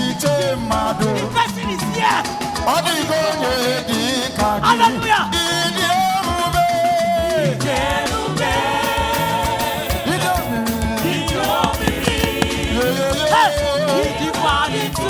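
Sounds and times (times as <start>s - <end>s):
voices singing: 0.0s - 15.0s
band with dance beat: 11.4s - 13.7s.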